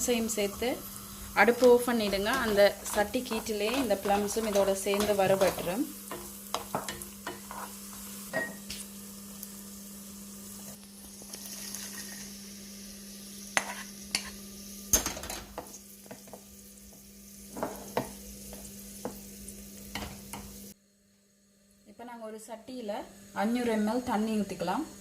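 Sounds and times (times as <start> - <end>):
nuts sizzling in hot fat: 0.0 - 20.8
spoon knocking and scraping pan: 1.4 - 8.8, 13.6 - 19.2, 19.9 - 20.5.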